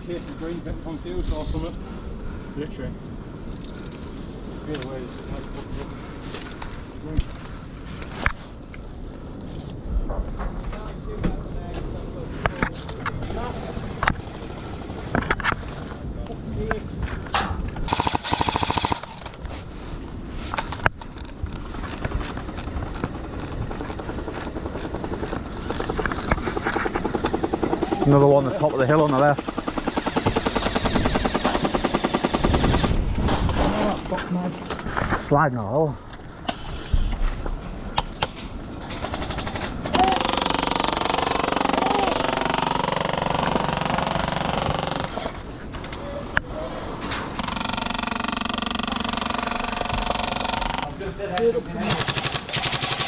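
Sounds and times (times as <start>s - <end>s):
airsoft gun firing full auto: 17.9s - 19.2s, 47.4s - 50.9s, 51.8s - 53.0s
rapid ticking: 47.4s - 50.9s.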